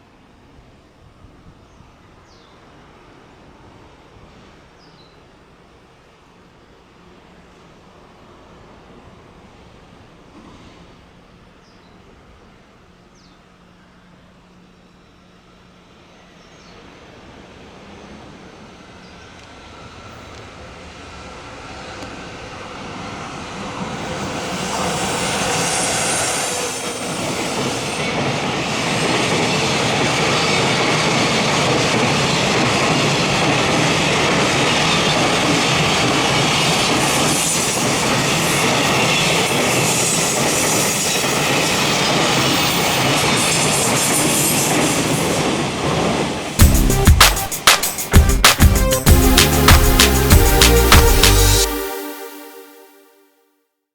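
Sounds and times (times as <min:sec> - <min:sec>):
freight train wheels on rails: 0:14.2 - 0:51.7.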